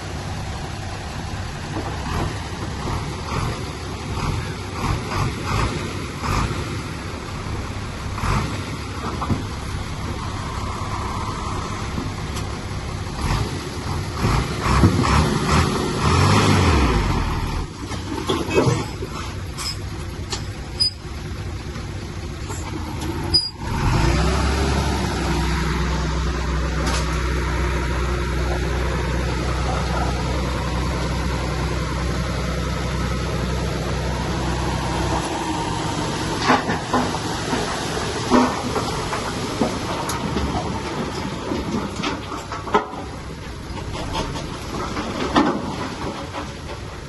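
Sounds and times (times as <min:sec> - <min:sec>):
diesel earthmoving machine drone: 0:00.0 - 0:47.0.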